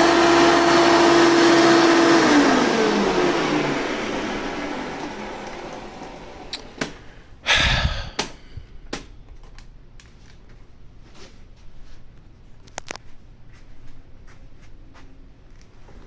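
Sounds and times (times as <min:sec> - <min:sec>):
vacuum cleaner motor winding down: 0:00.0 - 0:07.2.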